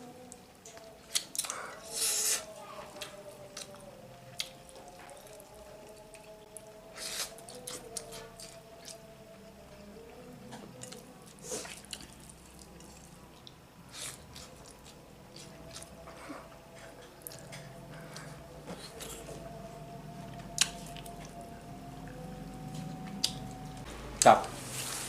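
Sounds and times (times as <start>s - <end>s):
wet chewing clicks and squishes: 11.6s - 13.6s, 20.6s - 21.4s.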